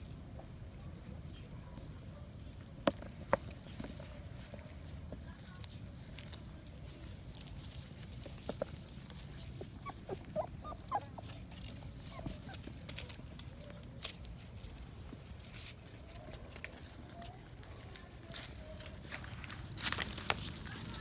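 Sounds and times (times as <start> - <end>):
puppies yelping and whimpering: 9.6 - 12.8.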